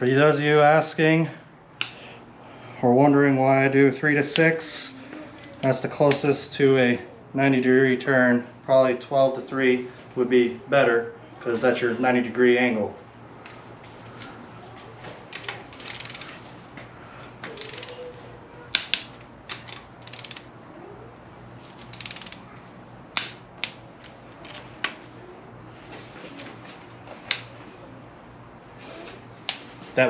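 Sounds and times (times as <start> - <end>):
socket ratchet clicking: 15.4 - 16.4, 17.6 - 18.1, 18.7 - 20.5, 21.8 - 22.5, 23.1 - 25.0.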